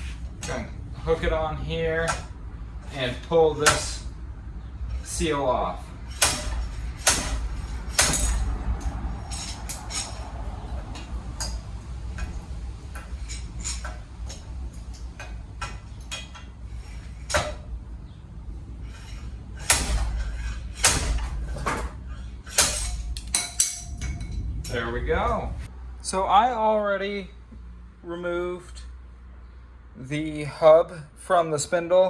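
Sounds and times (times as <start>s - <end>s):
slide hammer metal clanks: 0.0s - 4.2s, 4.9s - 17.9s, 18.8s - 24.9s.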